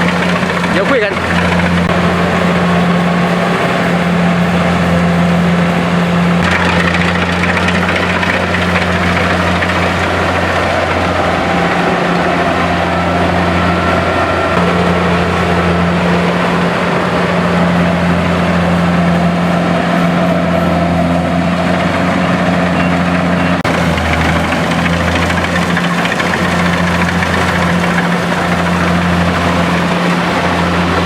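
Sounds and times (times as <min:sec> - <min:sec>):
dense noise: 0:00.0 - 0:19.8
engine humming steadily: 0:00.0 - 0:31.0.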